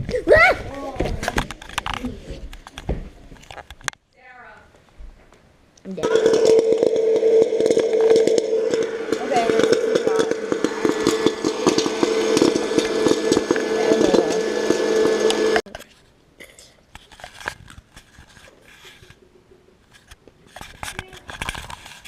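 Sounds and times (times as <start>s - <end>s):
whirring machine: 6.0s - 15.6s.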